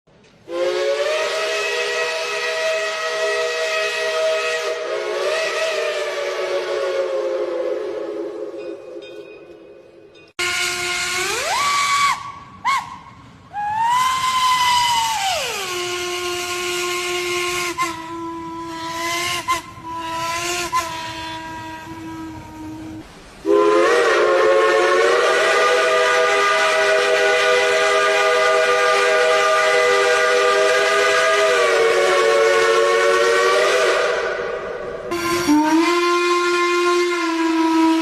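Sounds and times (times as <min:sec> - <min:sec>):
steam locomotive whistle: 0:00.4 - 0:38.0
steam hiss: 0:10.6 - 0:35.9.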